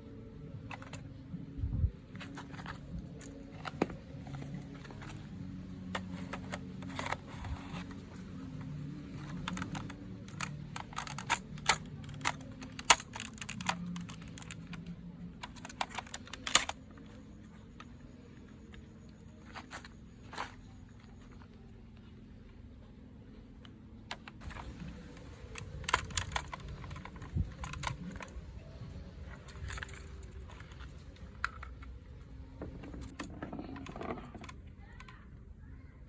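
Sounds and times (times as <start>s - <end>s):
low steady hum: 0.0s - 36.0s
plastic toy clicks and taps: 9.1s - 16.8s.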